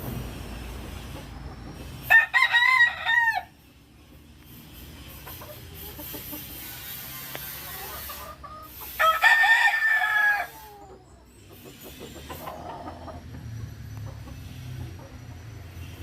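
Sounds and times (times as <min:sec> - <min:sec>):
rooster crowing: 0:02.0 - 0:03.6, 0:08.9 - 0:11.0.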